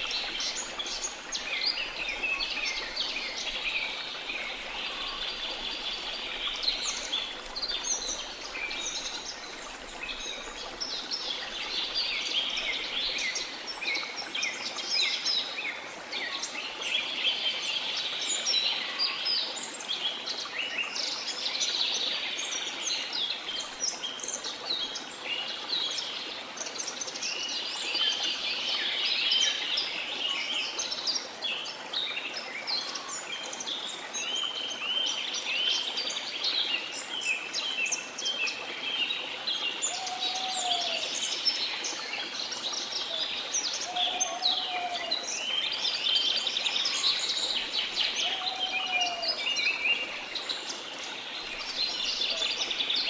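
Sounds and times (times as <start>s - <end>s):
falling water rushing: 0.0s - 16.3s, 38.7s - 53.0s
birds chirping and trilling: 43.1s - 46.0s, 46.6s - 50.6s.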